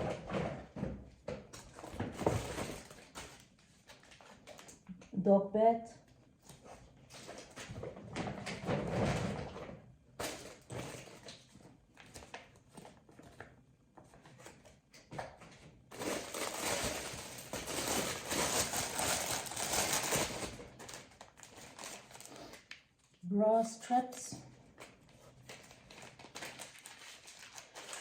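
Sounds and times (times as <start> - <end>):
plastic packaging crinkling: 15.9 - 23.2, 24.7 - 28.0.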